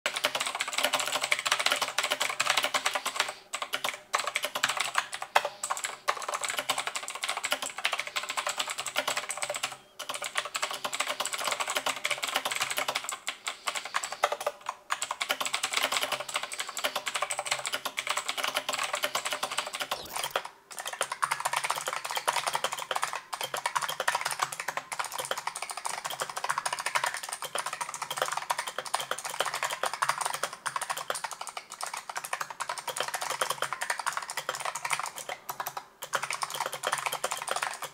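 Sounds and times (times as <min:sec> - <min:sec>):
mechanical keyboard typing: 0:00.1 - 0:37.9.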